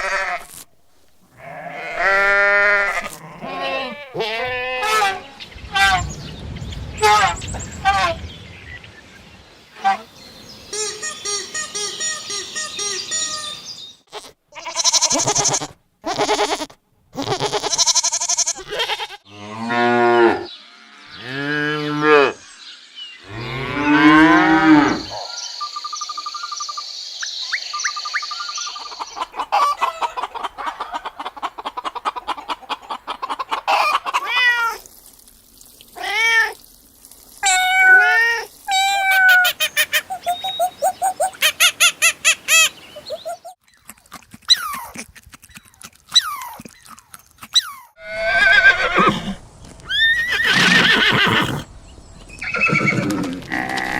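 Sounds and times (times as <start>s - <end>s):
cow mooing: 1.4s - 5.0s.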